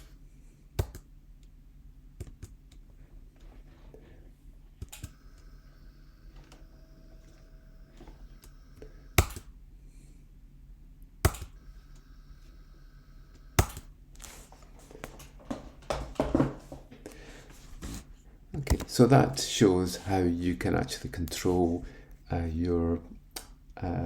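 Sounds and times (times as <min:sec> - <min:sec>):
faint steady whine: 0:00.0 - 0:24.0
relay switch clicks: 0:04.8 - 0:05.2.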